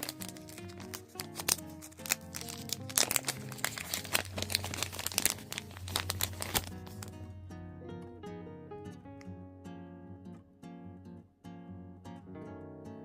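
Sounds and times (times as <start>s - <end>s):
plastic packaging crinkling: 0.0s - 7.2s
background music: 0.0s - 13.0s.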